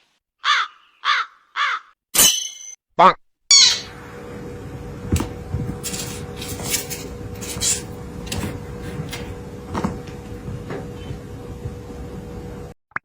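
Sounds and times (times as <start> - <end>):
faint steady hum: 3.8 - 12.7
rustling and scraping: 5.2 - 10.0.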